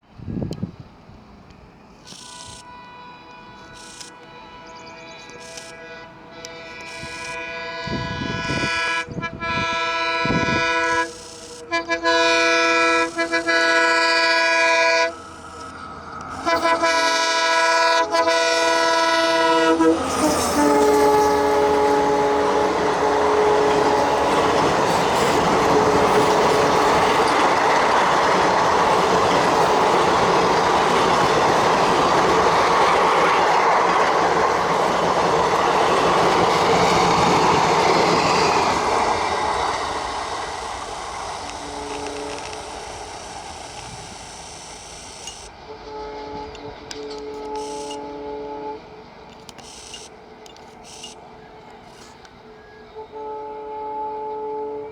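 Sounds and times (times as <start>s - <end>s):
locomotive horn blasts: 2.3s - 27.8s, 41.5s - 42.8s, 45.7s - 48.9s, 52.9s - 54.9s
train wheels clattering: 20.0s - 43.8s.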